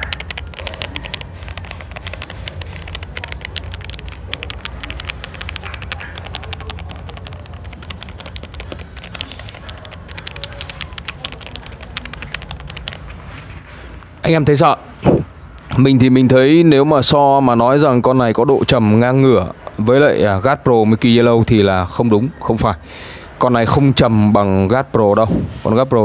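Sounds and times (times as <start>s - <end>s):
mechanical keyboard typing: 0.0s - 13.2s.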